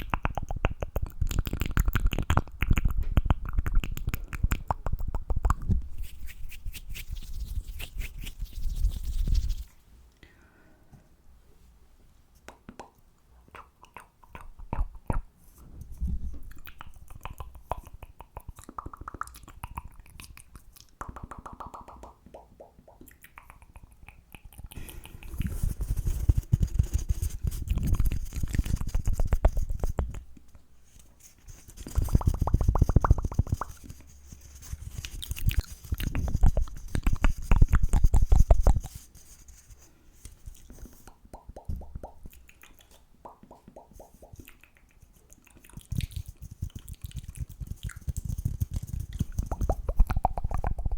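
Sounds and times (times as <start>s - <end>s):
mouth sounds: 16.4s - 30.3s, 31.6s - 39.0s, 40.5s - 50.9s
fast tapping: 31.7s - 34.0s.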